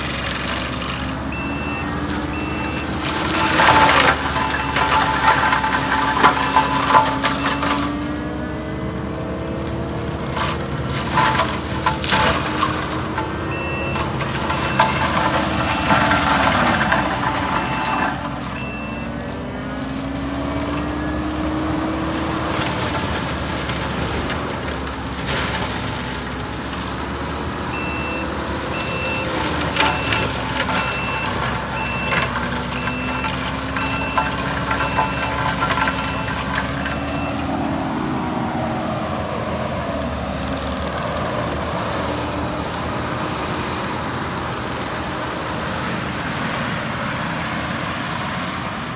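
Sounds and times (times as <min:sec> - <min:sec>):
wood cracking and splintering: 0:00.0 - 0:42.2
skid steer diesel engine: 0:00.0 - 0:48.9
reversing alarm beeping: 0:01.2 - 0:08.2, 0:11.1 - 0:19.4, 0:27.7 - 0:38.2.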